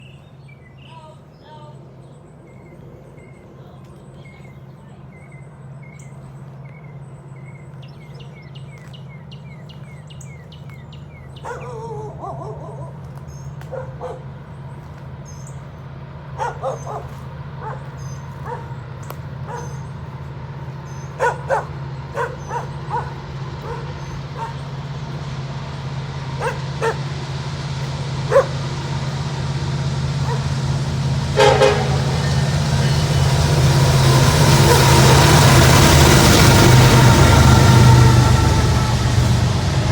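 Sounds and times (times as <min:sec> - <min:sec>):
birds chirping: 0:00.0 - 0:39.9
locomotive engine rumble: 0:00.0 - 0:39.9
dog barking: 0:11.4 - 0:13.0, 0:13.6 - 0:14.3, 0:16.4 - 0:18.8, 0:19.4 - 0:19.8, 0:21.2 - 0:24.6, 0:26.4 - 0:27.0, 0:28.3 - 0:28.5, 0:30.2 - 0:30.4.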